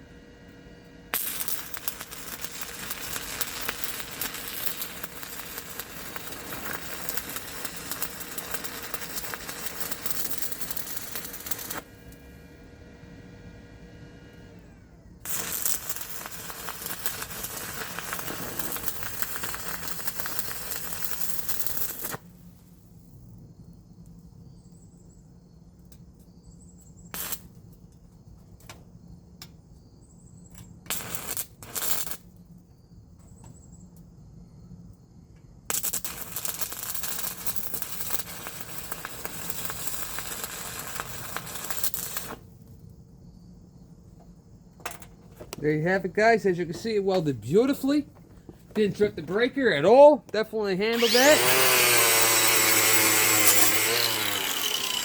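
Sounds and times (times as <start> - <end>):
steady low hum: 0.0 - 19.9
welding arc crackling: 1.0 - 12.2, 15.2 - 22.3, 27.1 - 27.5, 30.9 - 32.2, 35.7 - 42.4, 48.8 - 55.0.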